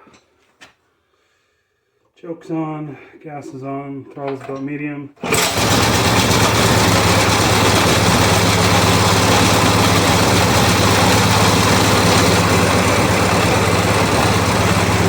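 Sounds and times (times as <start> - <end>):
small engine running: 5.2 - 15.0.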